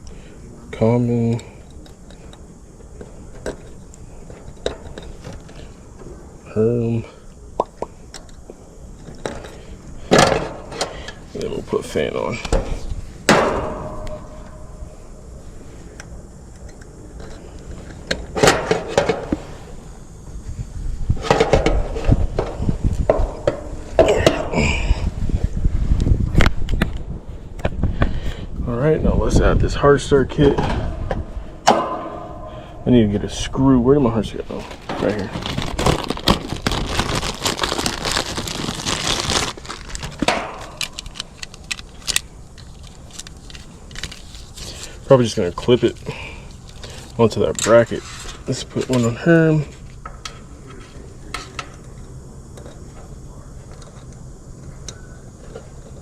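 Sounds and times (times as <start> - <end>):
crinkling and rustling: 34.2 - 49.1.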